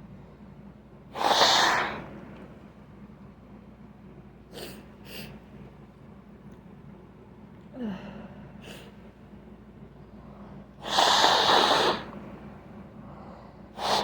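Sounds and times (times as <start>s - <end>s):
air rushing through nose: 1.2s - 2.1s, 10.8s - 12.2s, 13.8s - 14.0s.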